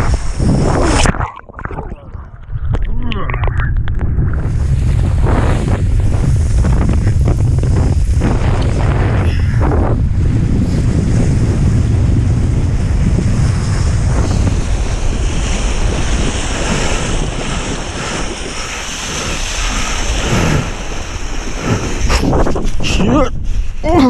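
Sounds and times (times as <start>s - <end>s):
rushing hiss of water and slush: 0.0s - 1.1s, 10.8s - 23.8s
wind buffeting microphone: 0.0s - 24.0s.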